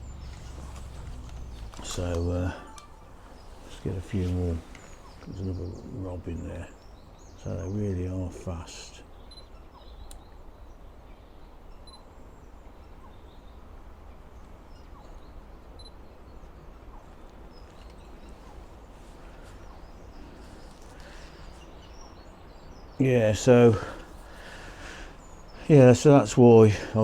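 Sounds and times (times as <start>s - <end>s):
steady low rumble: 0.0s - 6.4s
small birds chirping: 0.0s - 27.0s.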